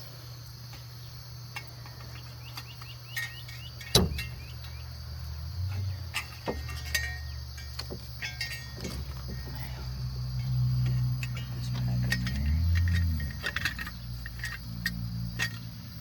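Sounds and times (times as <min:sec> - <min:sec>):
steady low hum: 0:00.0 - 0:16.0
sharp metal clank: 0:03.1 - 0:04.8, 0:05.7 - 0:09.6.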